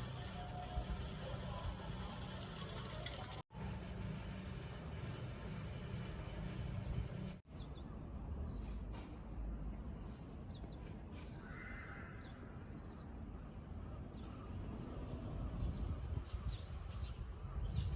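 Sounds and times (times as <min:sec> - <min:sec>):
low outdoor rumble: 0:00.0 - 0:10.2.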